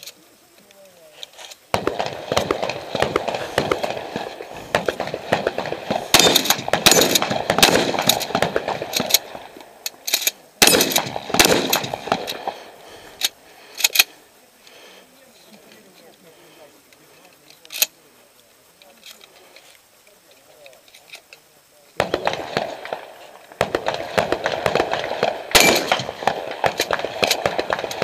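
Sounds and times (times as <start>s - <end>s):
shotgun fire: 1.7s - 9.5s, 10.6s - 12.7s, 22.0s - 28.0s
gun handling clatter: 6.2s - 14.2s, 17.3s - 18.0s, 18.8s - 21.4s, 25.6s - 28.0s.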